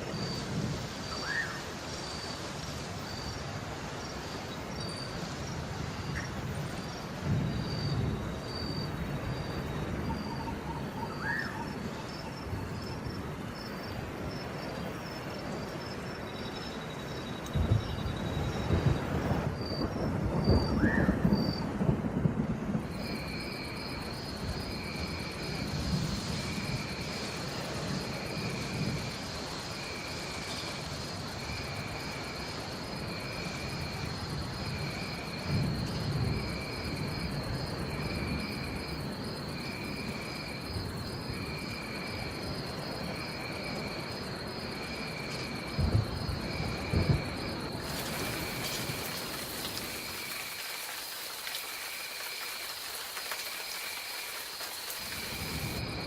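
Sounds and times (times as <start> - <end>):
insect trill: 0.0 - 22.0, 22.7 - 56.0
steady rain: 0.0 - 56.0
rolling thunder: 4.7 - 14.4, 17.4 - 44.5, 45.5 - 50.8
thunder claps: 17.4 - 27.2, 45.7 - 52.4.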